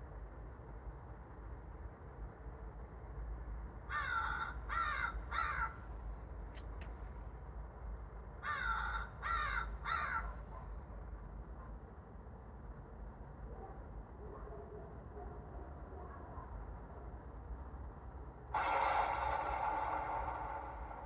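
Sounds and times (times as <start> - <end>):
raven cawing: 3.9 - 5.8, 8.4 - 10.4, 18.6 - 21.0
steady low hum: 14.9 - 21.0.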